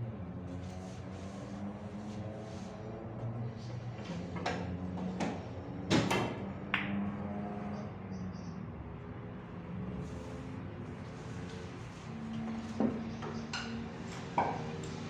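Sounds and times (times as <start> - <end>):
snooker balls clicking: 6.6 - 7.1.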